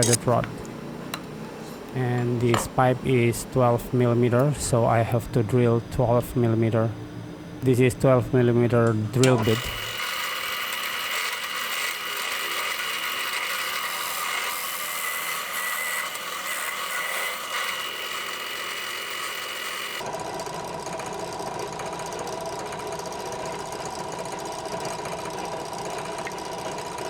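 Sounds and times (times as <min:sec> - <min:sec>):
lower steady machine run: 0:00.0 - 0:27.0
electric drill whining: 0:09.3 - 0:21.4.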